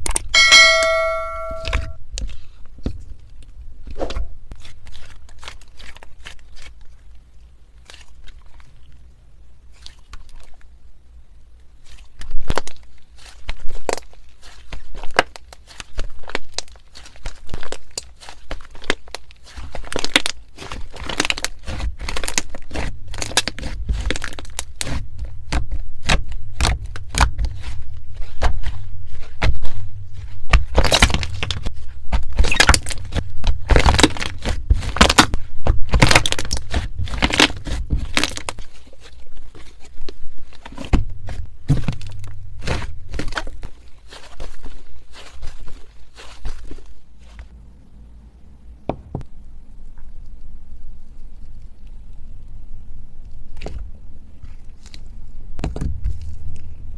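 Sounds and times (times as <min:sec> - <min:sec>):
slime crackling and popping: 0:11.8 - 0:47.3.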